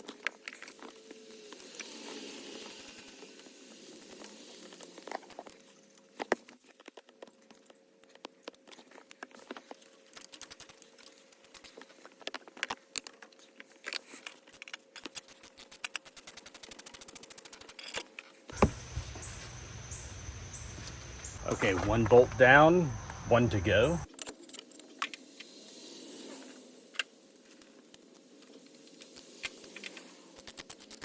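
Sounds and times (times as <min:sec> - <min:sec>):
steady hum: 0:18.5 - 0:24.1.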